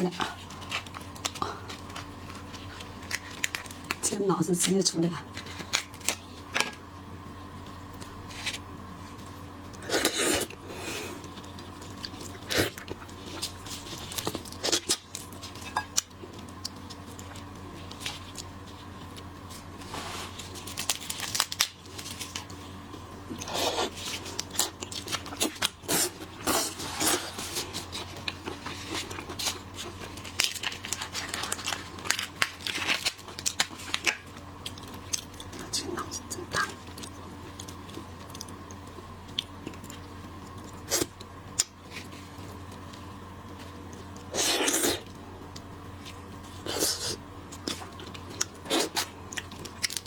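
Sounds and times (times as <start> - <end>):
crunching and chewing: 0.3 - 4.0, 9.2 - 19.7, 20.3 - 50.0
shrimp shells crackling and tearing: 0.5 - 4.0, 20.5 - 22.5, 27.8 - 35.6, 48.0 - 50.0.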